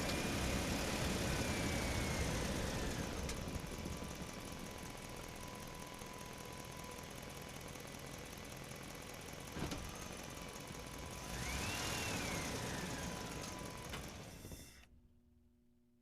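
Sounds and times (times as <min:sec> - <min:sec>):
vehicle engine running: 0:00.0 - 0:14.4.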